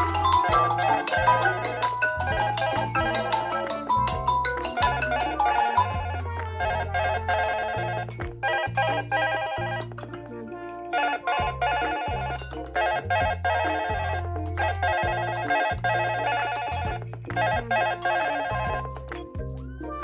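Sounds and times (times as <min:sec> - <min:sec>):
bright ringing trill: 0:00.0 - 0:19.5
electronic alarm melody: 0:00.0 - 0:19.5.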